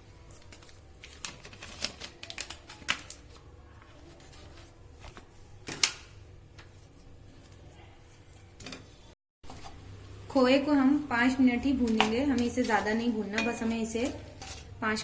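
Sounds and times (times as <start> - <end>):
spoon tapping metal pan: 11.9 - 14.2.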